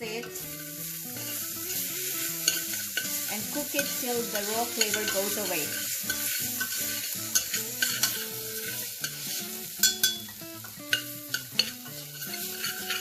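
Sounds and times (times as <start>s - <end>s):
onions sizzling in hot oil: 0.0s - 13.0s
spatula scraping and knocking pot: 6.0s - 10.3s, 10.9s - 13.0s.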